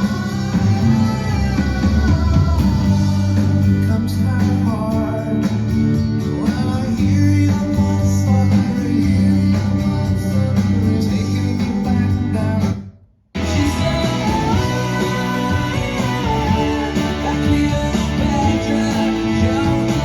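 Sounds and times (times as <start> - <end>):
guitar song over loudspeakers: 0.0 - 12.8, 13.4 - 20.0.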